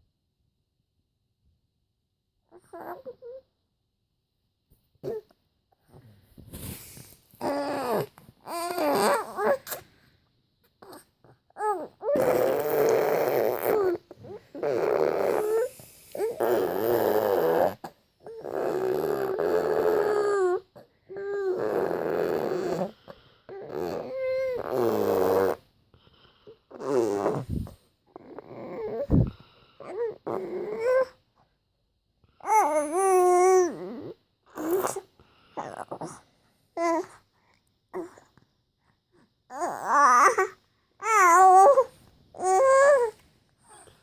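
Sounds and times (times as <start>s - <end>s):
dog making rough vocal noises: 26.7s - 29.4s.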